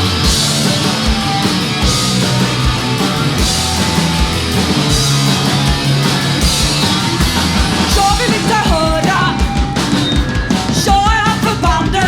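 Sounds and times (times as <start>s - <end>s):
punk band playing live: 0.0s - 12.0s.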